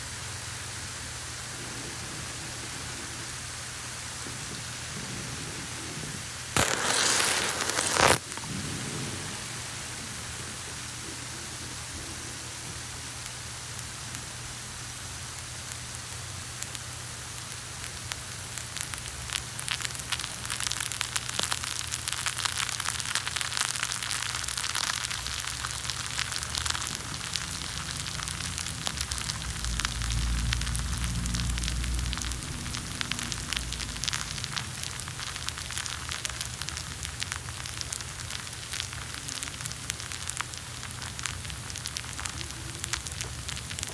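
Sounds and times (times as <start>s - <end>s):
coffee grounds hissing and fizzing: 0.1s - 43.9s
low rumble: 29.0s - 35.0s.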